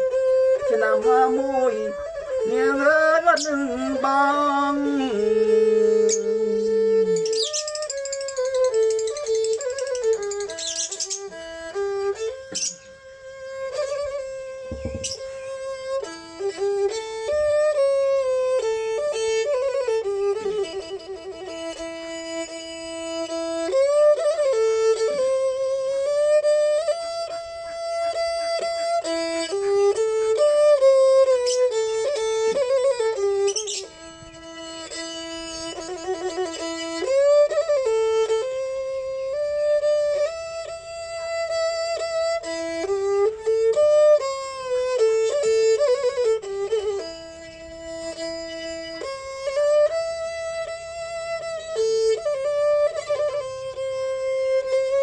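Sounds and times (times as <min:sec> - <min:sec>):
bowed fiddle melody: 0:00.0 - 0:55.0.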